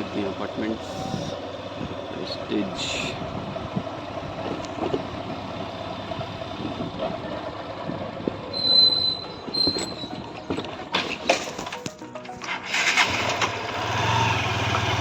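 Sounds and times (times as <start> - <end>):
vehicle rumbling: 0.0 - 15.0
brief high squeal: 8.5 - 10.2.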